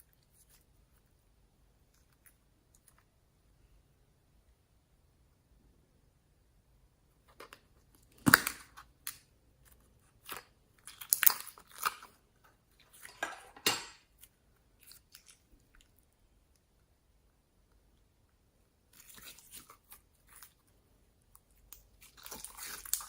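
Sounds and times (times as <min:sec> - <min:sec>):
slime crackling and popping: 0:08.1 - 0:09.3, 0:10.2 - 0:12.2, 0:21.5 - 0:23.0.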